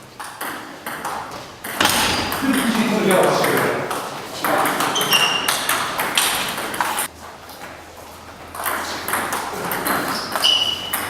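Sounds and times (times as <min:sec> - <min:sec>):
sharp taps and knocks: 0:01.8 - 0:04.0.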